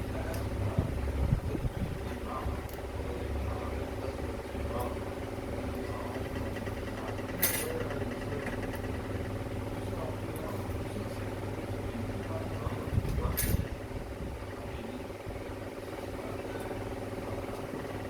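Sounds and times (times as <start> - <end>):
machine hum: 0.0 - 18.0.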